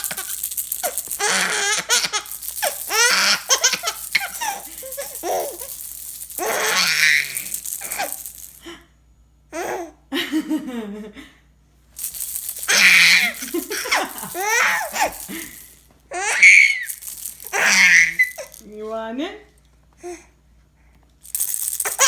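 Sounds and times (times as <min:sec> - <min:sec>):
baby laughing: 0:00.0 - 0:08.3, 0:12.5 - 0:18.6, 0:21.8 - 0:22.0
baby rattle shaking: 0:00.0 - 0:08.7, 0:12.0 - 0:18.7, 0:21.2 - 0:22.0.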